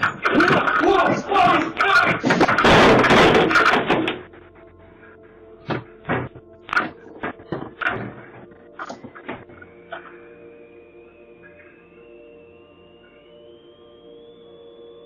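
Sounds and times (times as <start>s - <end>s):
faint steady hum: 0.0s - 15.0s
knocks and thuds: 2.2s - 4.2s.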